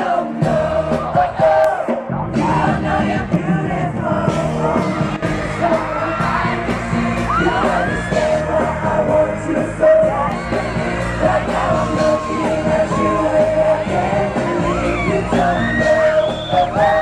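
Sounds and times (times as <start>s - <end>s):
amplified music: 0.0s - 17.0s
boy band singing pop song: 0.0s - 17.0s
crowd yelling and whooping: 4.5s - 17.0s.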